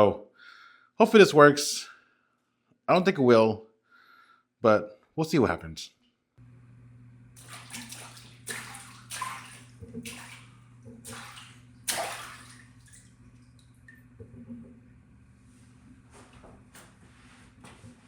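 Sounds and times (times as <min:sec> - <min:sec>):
water splashing in a tub: 0:07.3 - 0:16.6.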